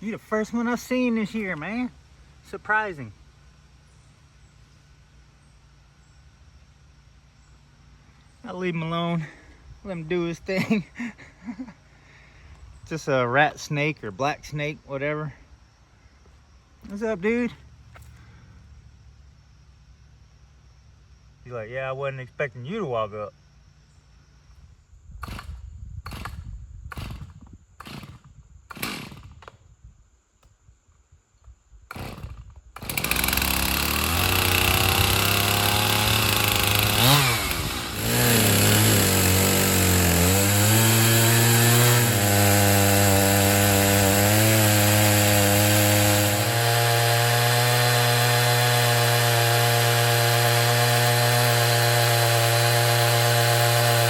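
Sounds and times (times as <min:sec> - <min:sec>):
chainsaw engine revving: 0:25.2 - 0:29.5, 0:31.9 - 0:54.0.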